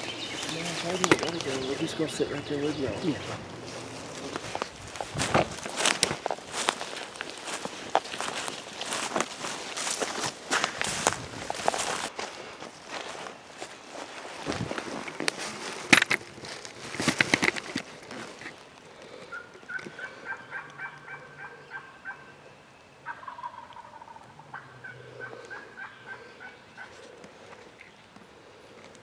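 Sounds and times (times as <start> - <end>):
footsteps: 0.0 - 18.6
rustling: 0.0 - 19.3
turkey yelps: 19.3 - 22.3, 23.0 - 27.0.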